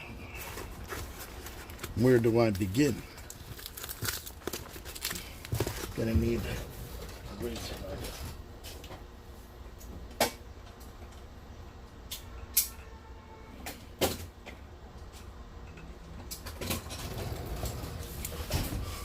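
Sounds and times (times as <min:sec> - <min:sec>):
packaging rustling: 0:00.4 - 0:07.7.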